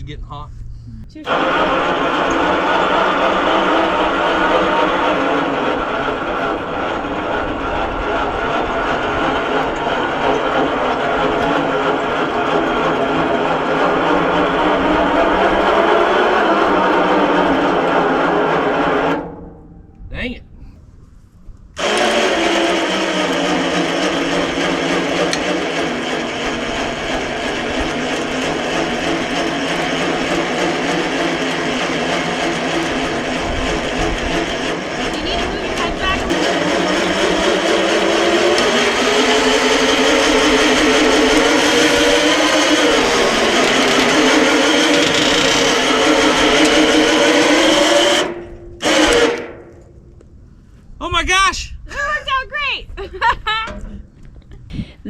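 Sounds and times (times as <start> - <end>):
electric winch motor straining: 1.2 - 19.8, 21.8 - 50.4.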